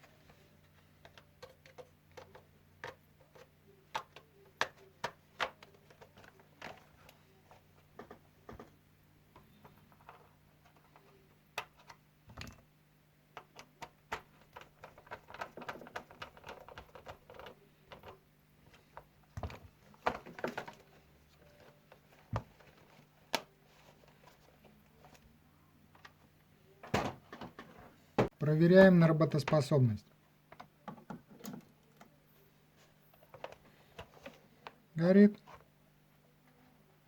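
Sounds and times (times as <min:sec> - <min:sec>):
clicks and taps of parts: 0:00.7 - 0:07.2, 0:09.4 - 0:12.6, 0:13.3 - 0:20.8.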